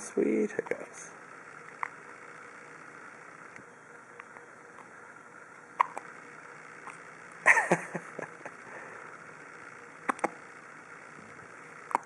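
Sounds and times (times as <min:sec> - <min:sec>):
baby hiccuping: 0:05.8 - 0:06.0.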